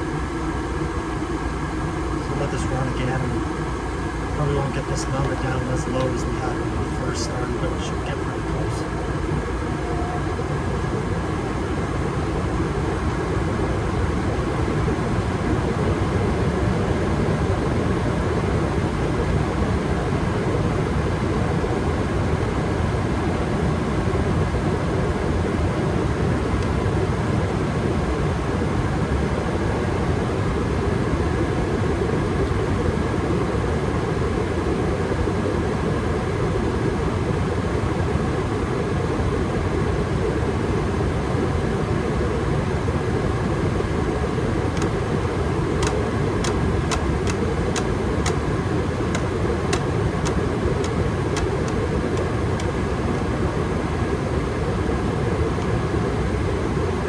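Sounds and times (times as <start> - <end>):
gas furnace rushing: 0.0 - 14.7, 43.4 - 57.0
sharp clicks: 4.8 - 7.5, 44.7 - 53.3.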